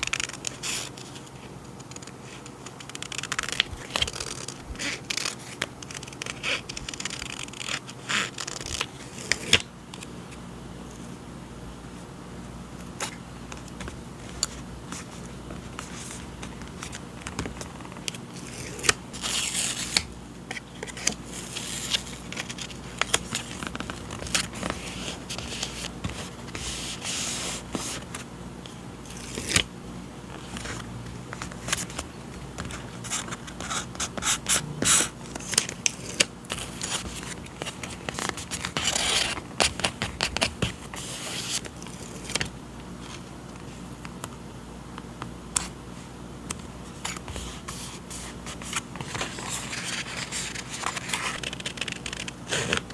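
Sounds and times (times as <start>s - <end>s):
paper crinkling: 1.9s - 9.6s, 14.2s - 28.3s, 47.1s - 52.9s
paper rustling: 13.6s - 28.3s, 30.3s - 43.2s, 47.1s - 52.9s
packaging scraping: 48.6s - 52.9s.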